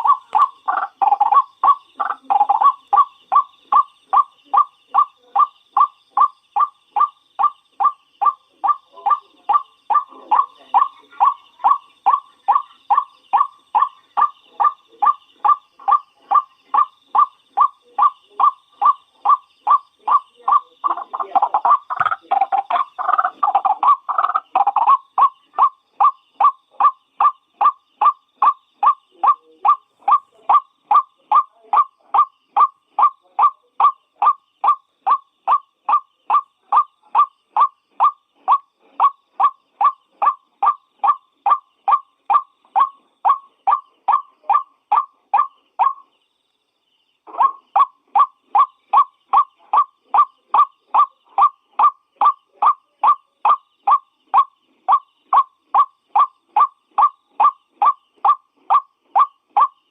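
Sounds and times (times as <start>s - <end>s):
waterhen calling: 0.0s - 46.0s.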